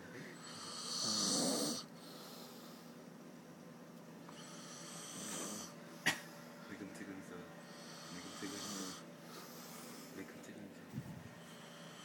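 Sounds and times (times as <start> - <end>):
person snoring: 0.4 - 2.5, 4.3 - 5.7, 7.7 - 9.0.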